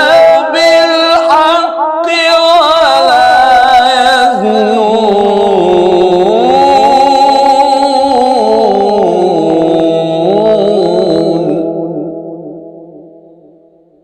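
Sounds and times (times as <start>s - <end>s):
man reciting melodically: 0.0s - 13.0s.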